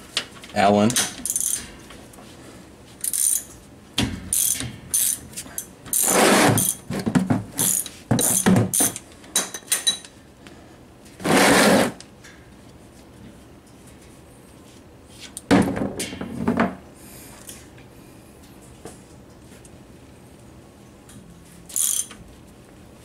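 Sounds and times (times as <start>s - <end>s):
ratchet wrench clicking: 1.2s - 1.6s, 3.0s - 3.5s, 4.3s - 6.8s, 7.6s - 9.0s, 21.7s - 22.2s.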